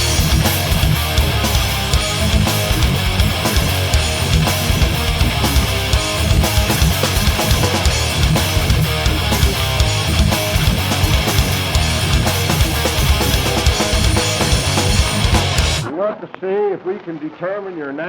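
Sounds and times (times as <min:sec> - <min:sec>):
drum kit beat: 0:00.0 - 0:15.9
electric guitars strummed: 0:00.0 - 0:15.9.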